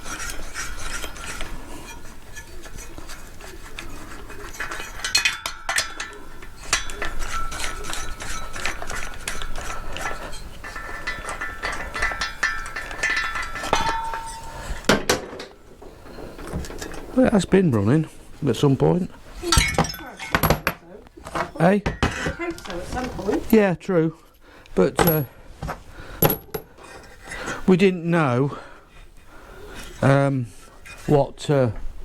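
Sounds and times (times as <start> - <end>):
metal tools clicking and clinking: 0.1 - 17.1, 19.4 - 20.8, 21.4 - 23.2.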